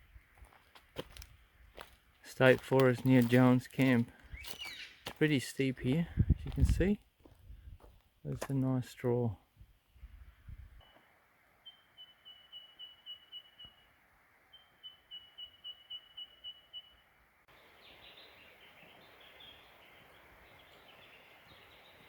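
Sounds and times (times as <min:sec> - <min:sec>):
birds chirping: 0:02.3 - 0:05.7, 0:10.8 - 0:22.0
bird calling high pips: 0:04.3 - 0:05.2, 0:10.8 - 0:17.1.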